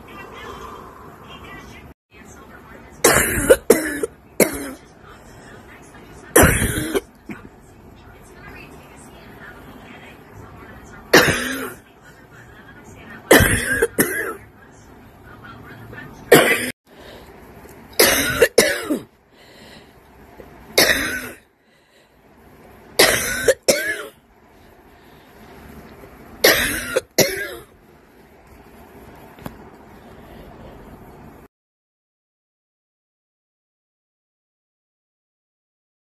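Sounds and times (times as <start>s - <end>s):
woman coughing: 3.0s - 4.9s, 6.3s - 7.6s, 11.1s - 11.8s, 13.3s - 14.5s, 16.3s - 16.7s, 18.0s - 19.1s, 20.8s - 21.4s, 23.0s - 24.2s, 26.4s - 27.7s.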